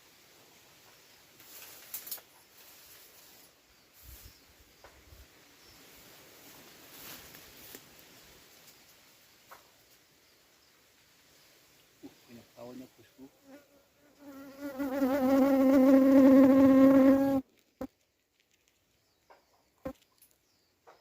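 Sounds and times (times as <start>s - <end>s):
flying insect buzzing: 13.4s - 17.5s.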